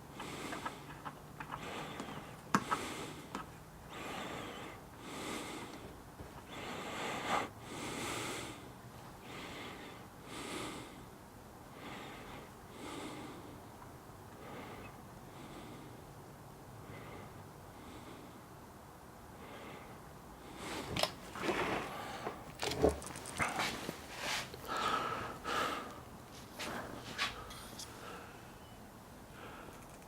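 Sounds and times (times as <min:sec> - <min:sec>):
person breathing: 0:00.1 - 0:03.3, 0:03.9 - 0:05.9, 0:06.5 - 0:11.1, 0:19.4 - 0:22.5, 0:23.4 - 0:29.9.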